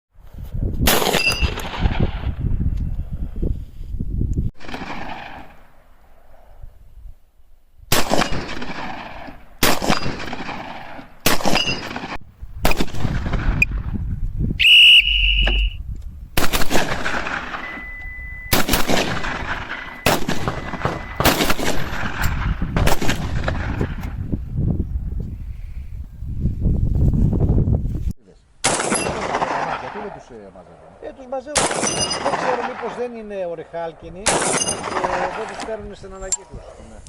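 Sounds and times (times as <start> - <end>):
shotgun shots with echo: 0.9 - 2.4, 4.6 - 5.7, 7.9 - 13.8, 16.4 - 17.9, 18.5 - 24.0, 28.6 - 30.3, 31.5 - 33.2, 34.2 - 35.6
high-pitched tone: 17.5 - 18.7, 19.7 - 21.4.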